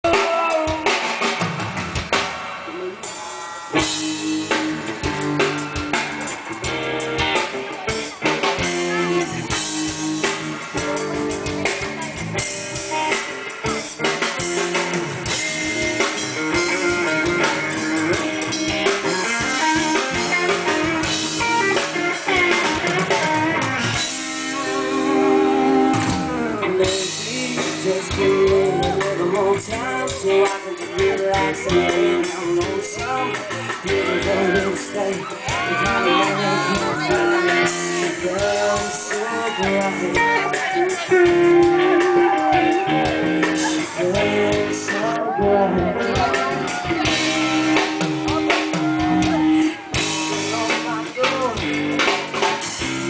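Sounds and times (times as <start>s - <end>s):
rock band playing live: 0.0s - 53.0s.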